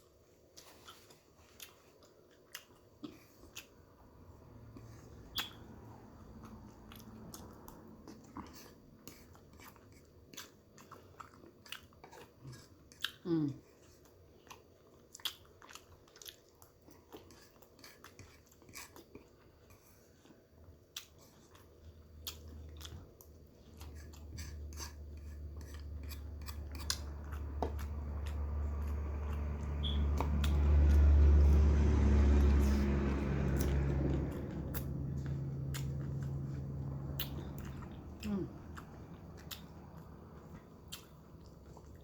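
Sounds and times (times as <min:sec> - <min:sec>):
close-up chewing and biting: 0:00.0 - 0:42.0
mouth clicks: 0:05.3 - 0:05.6
low rumble: 0:27.1 - 0:40.6.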